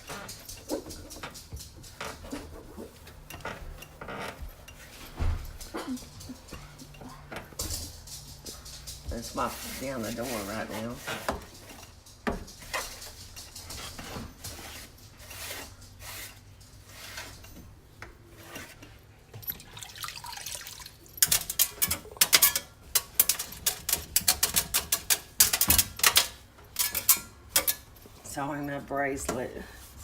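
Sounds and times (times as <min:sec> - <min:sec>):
sponge wiping microwave door: 0:09.1 - 0:11.4.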